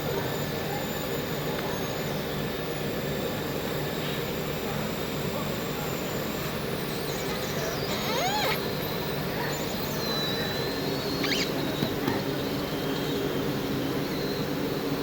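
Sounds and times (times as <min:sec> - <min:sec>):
high squeaks: 0:07.0 - 0:08.9, 0:10.4 - 0:12.0.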